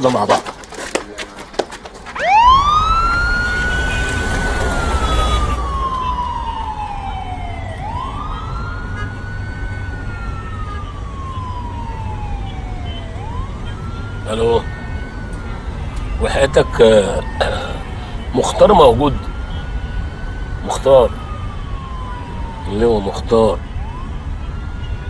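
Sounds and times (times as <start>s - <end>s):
police siren wailing: 0.4s - 25.0s
low engine rumble: 1.0s - 9.7s.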